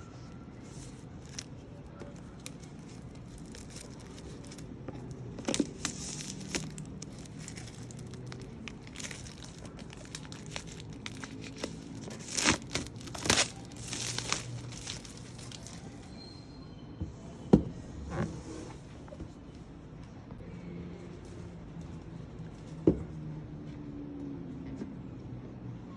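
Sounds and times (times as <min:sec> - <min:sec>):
packaging crinkling and ripping: 0:00.7 - 0:01.6, 0:02.2 - 0:16.0.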